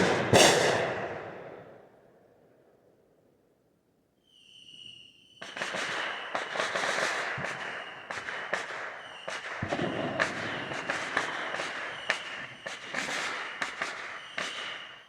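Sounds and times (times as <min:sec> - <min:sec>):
rapid firework bangs and crackling: 0:00.0 - 0:01.6, 0:05.4 - 0:15.0
whistling firework: 0:00.0 - 0:01.8, 0:04.2 - 0:15.0.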